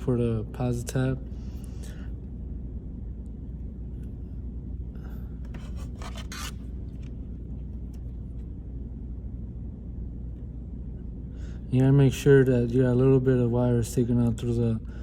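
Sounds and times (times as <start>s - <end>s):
low background hum: 0.0s - 15.0s
wire rubbing and scratching: 5.5s - 7.1s.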